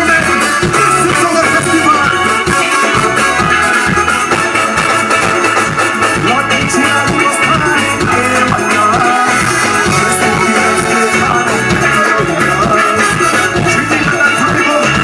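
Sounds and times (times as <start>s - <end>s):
band playing steady beat: 0.0s - 15.0s.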